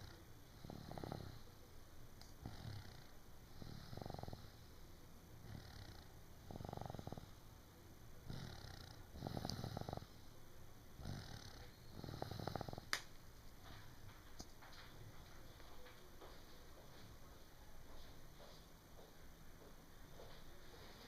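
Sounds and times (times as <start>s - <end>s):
person snoring: 0.0s - 1.6s, 2.4s - 4.7s, 5.4s - 7.4s, 8.2s - 10.2s, 11.0s - 12.9s.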